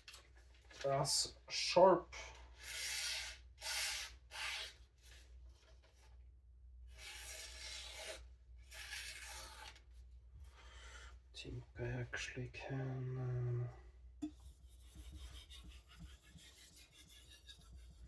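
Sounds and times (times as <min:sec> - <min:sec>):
knife slicing paper: 0:06.9 - 0:09.8.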